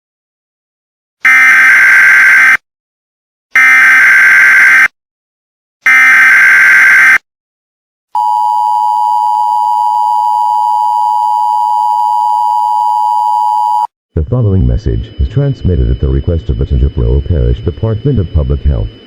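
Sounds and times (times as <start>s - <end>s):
warbling digital data tones: 14.4s - 19.0s.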